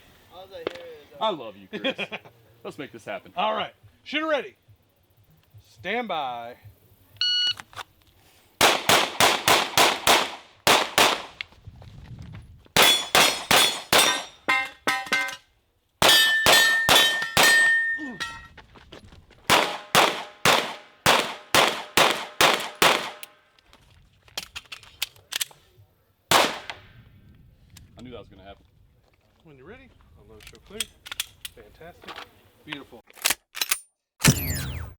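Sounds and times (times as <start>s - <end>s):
rapid pistol shots: 8.6s - 11.4s, 12.8s - 14.1s, 19.5s - 23.3s, 26.3s - 26.8s
steel targets ringing: 12.8s - 15.4s, 16.0s - 18.5s.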